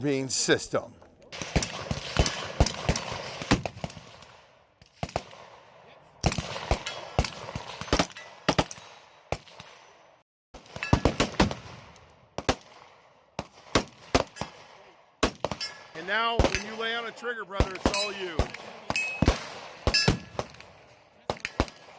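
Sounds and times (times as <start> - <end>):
gunshots with echo: 13.5 - 21.9.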